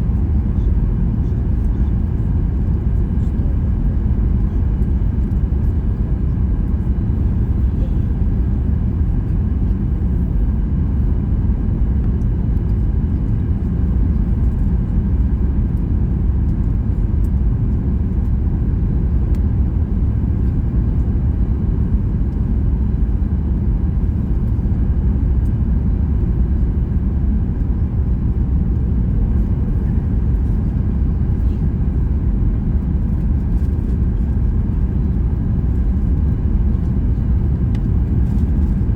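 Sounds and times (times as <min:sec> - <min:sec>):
airliner cabin rumble: 0:00.0 - 0:38.9.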